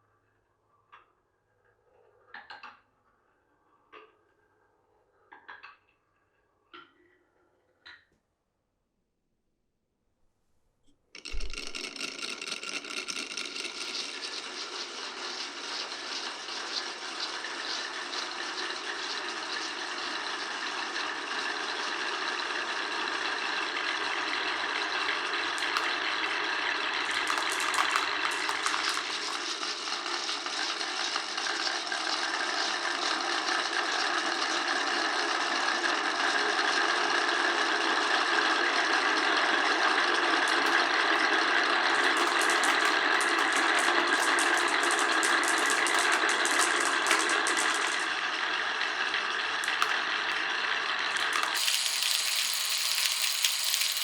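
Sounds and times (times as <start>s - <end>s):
marbles clicking and clattering: 11.2s - 20.2s, 23.1s - 33.0s, 39.9s - 54.0s
marbles rolling on tracks: 11.2s - 54.0s.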